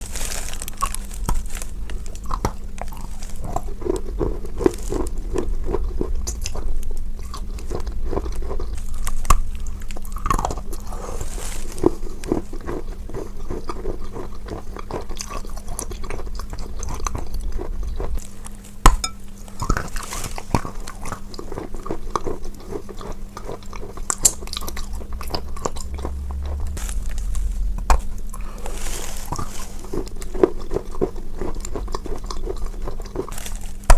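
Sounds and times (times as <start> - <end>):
chewing crunchy chalk: 0.0 - 33.9.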